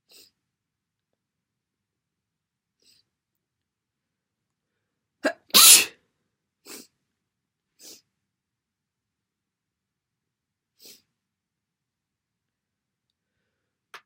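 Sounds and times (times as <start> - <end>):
loud wet sneeze: 5.2 - 6.0.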